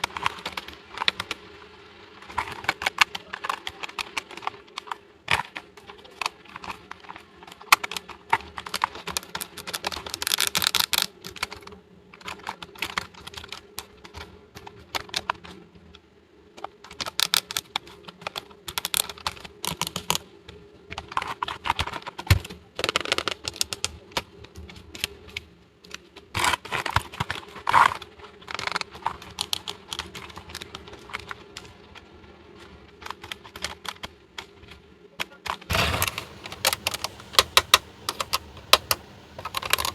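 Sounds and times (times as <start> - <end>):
plastic toy pieces clicking: 2.3 - 13.9, 35.4 - 39.9.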